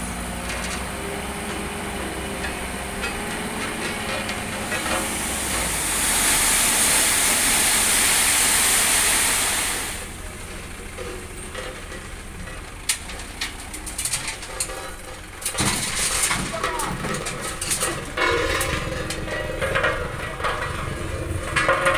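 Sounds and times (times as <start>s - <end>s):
loud steady hiss: 4.8s - 10.2s.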